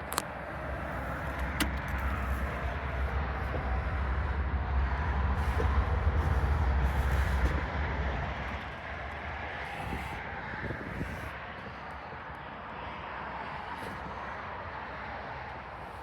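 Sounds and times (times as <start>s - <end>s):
diesel engine rumbling: 0.0s - 12.6s.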